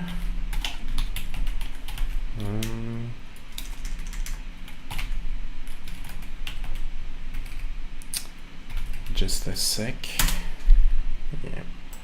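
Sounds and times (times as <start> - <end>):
computer keyboard typing: 0.0 - 2.8, 3.4 - 7.7, 8.7 - 9.2
low mains hum: 0.0 - 12.0
person humming: 2.3 - 3.2.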